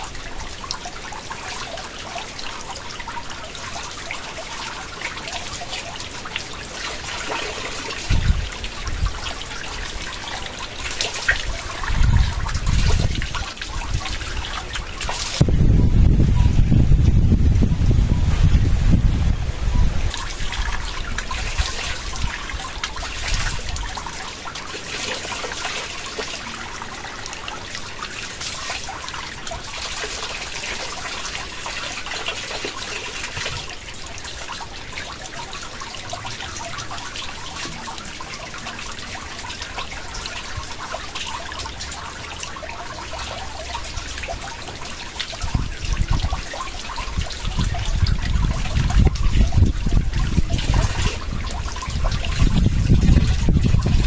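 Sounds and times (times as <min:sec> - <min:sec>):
trickling water hiss: 0:00.0 - 0:15.6, 0:18.4 - 0:54.0
wind buffeting microphone: 0:08.0 - 0:10.1, 0:11.4 - 0:24.0, 0:45.3 - 0:54.0.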